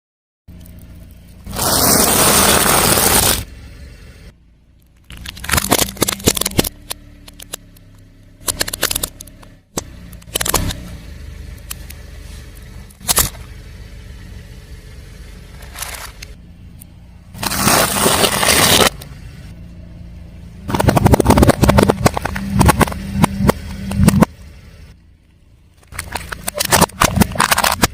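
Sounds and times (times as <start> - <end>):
car engine running: 0.5 - 27.9
tyre crushing crunchy objects: 1.4 - 3.5, 5.1 - 6.9, 17.4 - 19.0, 20.7 - 24.3.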